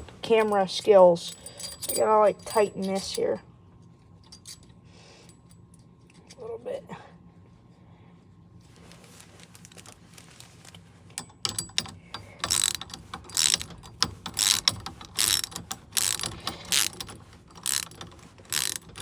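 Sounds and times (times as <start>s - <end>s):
ratchet wrench clicking: 11.2s - 19.0s.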